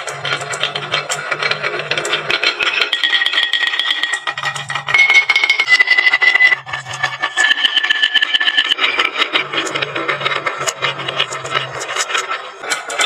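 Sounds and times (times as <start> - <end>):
marbles clacking down wooden run: 0.4 - 9.7.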